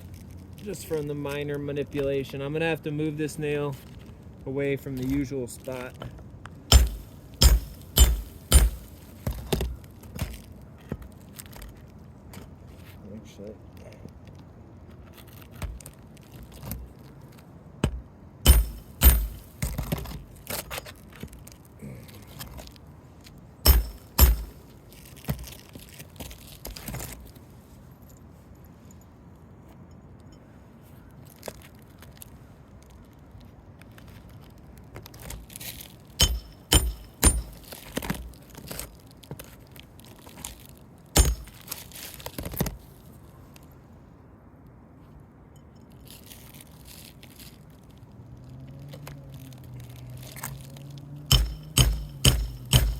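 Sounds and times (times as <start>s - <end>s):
hammer striking metal tool: 6.7s - 9.0s, 18.5s - 19.5s, 23.6s - 24.6s, 36.2s - 37.7s, 41.2s - 41.6s, 51.3s - 52.9s.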